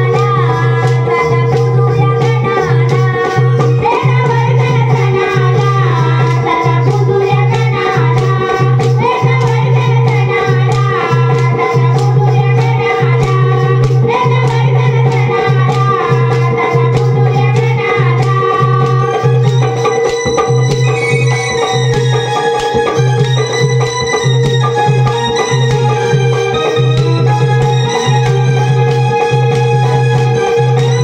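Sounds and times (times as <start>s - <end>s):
shaker-like percussion: 0.0s - 31.0s
ornamented melody: 17.9s - 31.0s.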